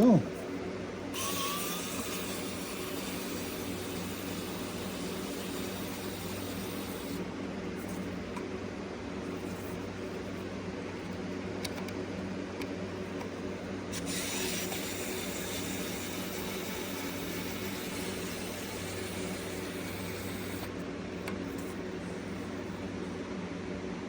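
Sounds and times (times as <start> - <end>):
electric screwdriver motor whirring: 1.2 - 7.2, 13.9 - 20.7.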